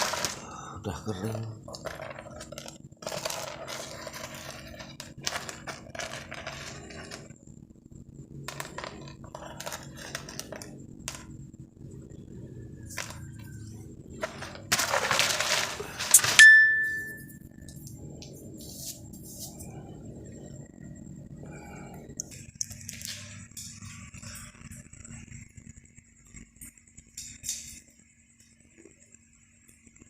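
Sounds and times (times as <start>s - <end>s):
scraping rustle: 0.0s - 0.4s, 1.7s - 7.4s, 14.2s - 16.4s
small objects rustling and clicking: 0.0s - 0.5s, 1.2s - 7.4s, 8.4s - 11.4s, 12.9s - 18.4s, 22.1s - 25.5s
sharp ringing clink: 16.2s - 17.4s.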